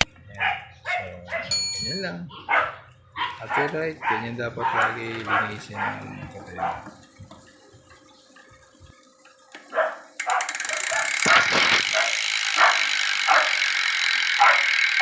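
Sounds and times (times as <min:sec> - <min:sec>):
dog barking: 0:00.3 - 0:01.6, 0:02.3 - 0:07.0, 0:09.7 - 0:13.6, 0:14.4 - 0:14.7.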